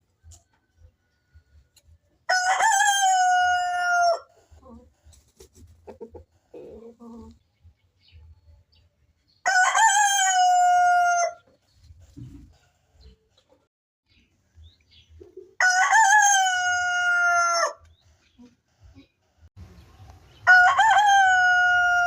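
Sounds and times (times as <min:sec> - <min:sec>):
rooster crowing: 0:02.3 - 0:04.3, 0:09.4 - 0:11.4, 0:15.6 - 0:17.8, 0:20.4 - 0:22.0.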